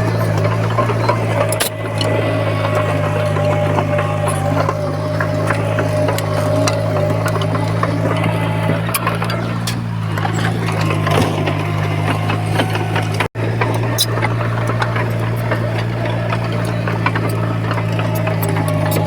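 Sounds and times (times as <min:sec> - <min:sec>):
heavy diesel engine running: 0:00.0 - 0:19.0.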